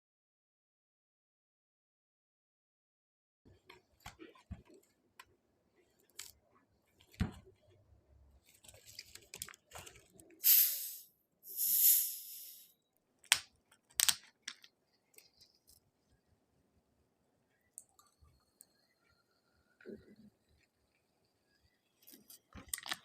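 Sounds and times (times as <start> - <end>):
carbonation hissing: 10.4 - 12.7.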